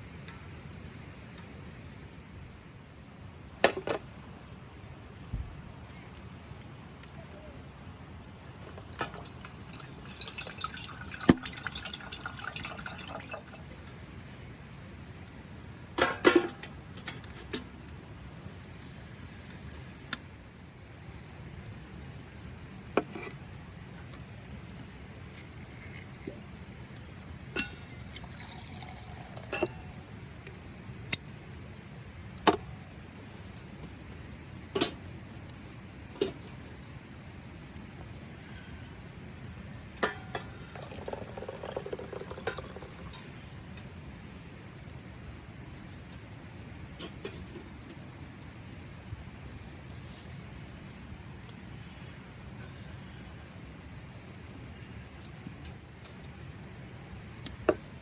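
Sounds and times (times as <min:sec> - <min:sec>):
liquid bubbling and dripping: 0:08.4 - 0:14.0, 0:24.2 - 0:31.4, 0:40.7 - 0:44.0.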